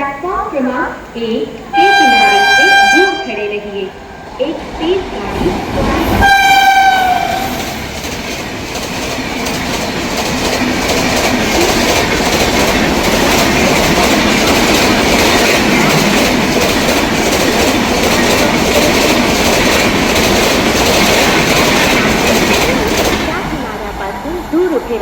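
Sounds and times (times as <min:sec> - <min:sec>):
train passing at speed: 0:00.0 - 0:25.0
wheels clattering over rail joints: 0:05.0 - 0:24.0.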